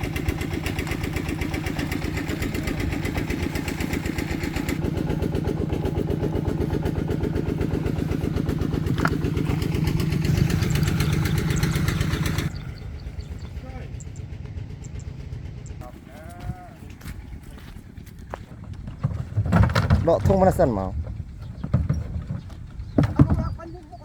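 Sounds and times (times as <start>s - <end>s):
small engine running: 0.0s - 18.8s.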